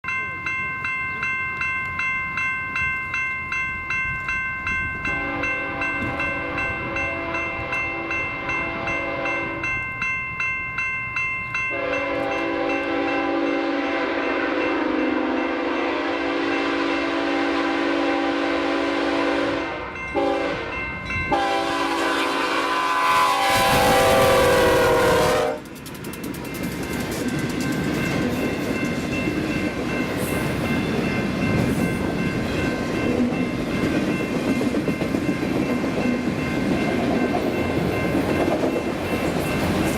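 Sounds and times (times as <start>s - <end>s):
crossing bell dinging: 0.0s - 39.9s
locomotive horn blasts: 5.1s - 9.6s, 11.7s - 25.7s.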